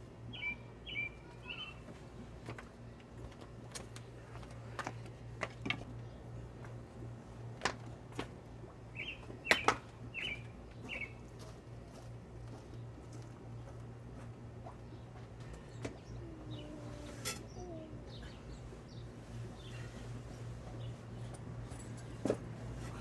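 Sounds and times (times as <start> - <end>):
bird chirps: 0.3 - 1.8, 8.9 - 11.2.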